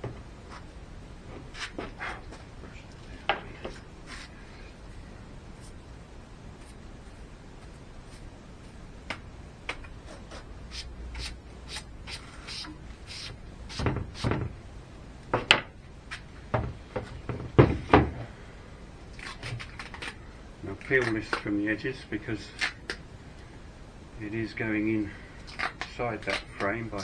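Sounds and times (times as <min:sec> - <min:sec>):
heavy knocks of panels: 0:13.7 - 0:14.6, 0:16.4 - 0:18.4.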